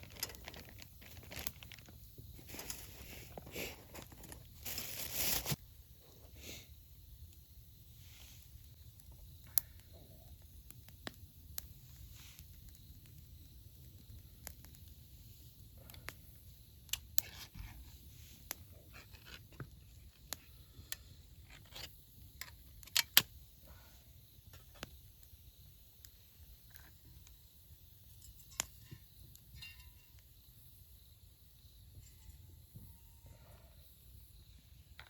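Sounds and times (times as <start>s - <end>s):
clicks of small hard objects: 0.0s - 5.4s, 16.8s - 23.3s.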